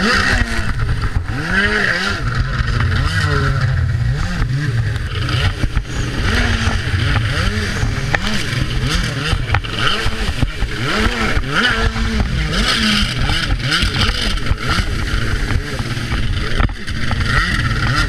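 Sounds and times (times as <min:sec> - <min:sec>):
jet ski engine revving: 0:00.0 - 0:18.0
rush of water and wind: 0:00.0 - 0:18.0.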